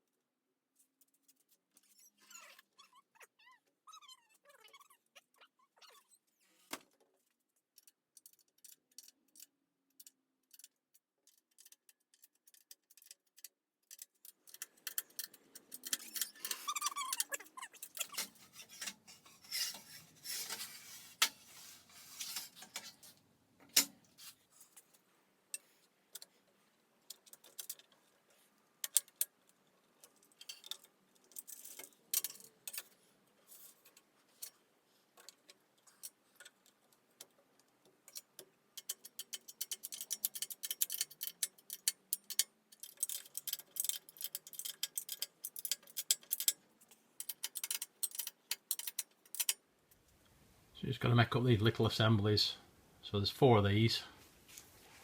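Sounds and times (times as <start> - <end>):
metal parts and tools clinking: 7.8 - 23.1, 27.1 - 34.6, 38.1 - 49.6.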